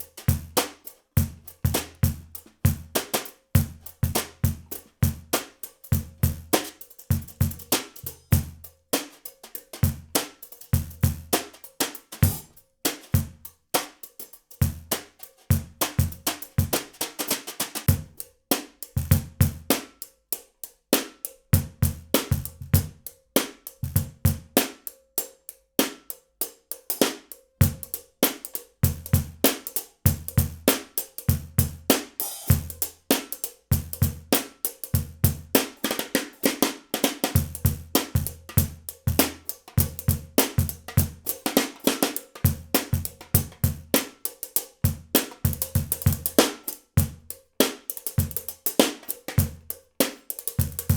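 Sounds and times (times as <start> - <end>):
hi-hat hits: 32.1 - 33.5.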